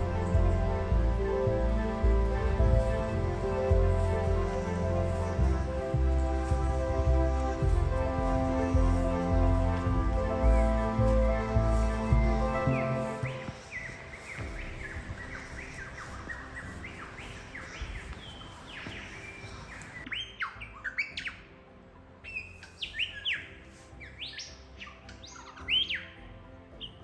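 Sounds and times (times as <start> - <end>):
birds chirping and whistling: 9.6 - 21.5, 22.2 - 26.2.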